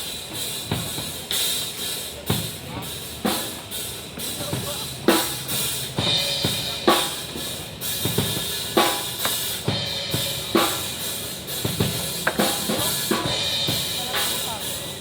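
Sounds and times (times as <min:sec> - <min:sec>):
cymbal hits: 0:00.0 - 0:15.0.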